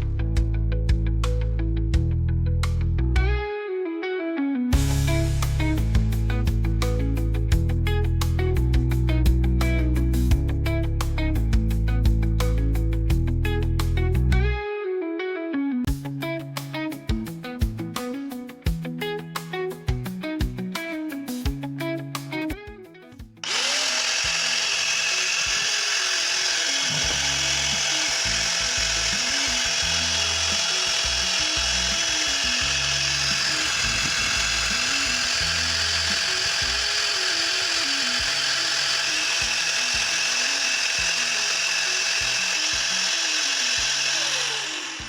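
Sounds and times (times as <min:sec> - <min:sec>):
angle grinder running: 0:23.4 - 0:45.0.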